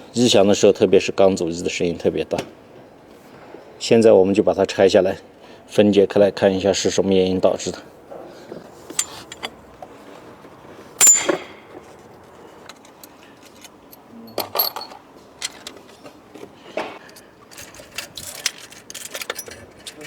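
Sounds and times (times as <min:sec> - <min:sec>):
metal tools clinking: 0:08.9 - 0:09.6, 0:11.0 - 0:11.9, 0:12.7 - 0:16.1, 0:17.0 - 0:20.0.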